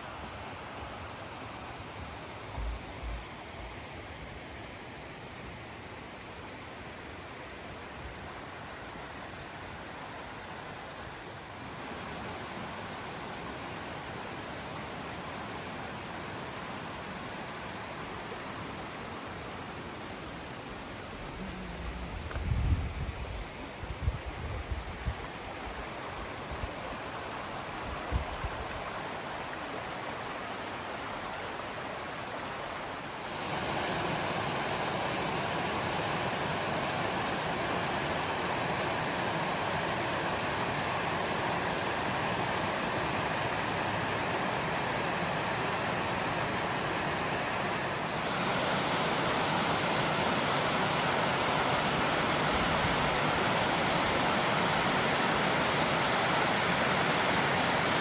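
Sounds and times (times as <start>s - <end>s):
waterfall rushing: 25.9s - 58.0s.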